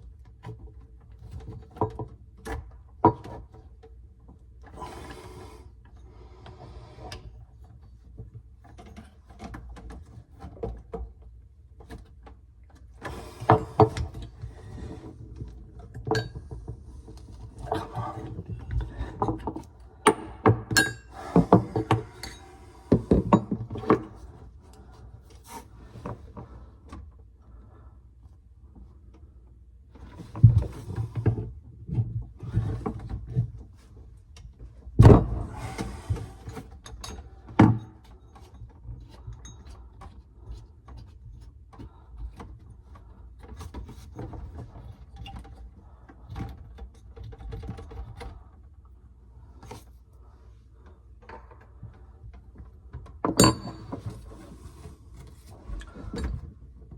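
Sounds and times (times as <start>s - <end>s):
tools and parts clattering: 53.0s - 56.5s.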